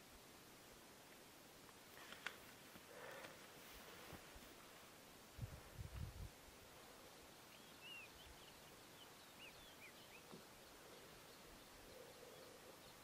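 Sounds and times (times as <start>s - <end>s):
small bird chirping: 7.2s - 13.0s.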